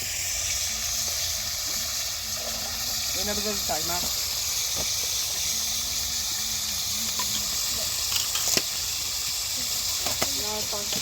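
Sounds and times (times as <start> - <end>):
steady hissing noise: 0.0 - 11.0.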